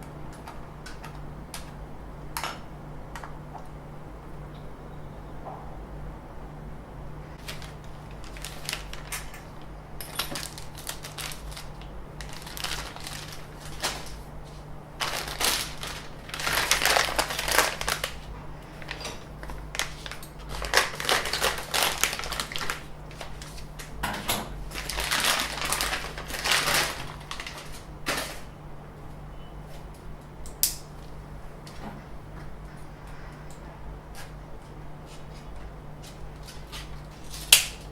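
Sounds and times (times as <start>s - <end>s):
packaging rustling and crinkling: 7.4s - 28.5s.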